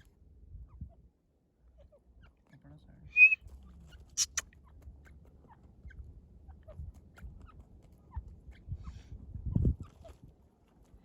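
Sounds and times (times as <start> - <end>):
francolins clucking: 3.2 - 10.2.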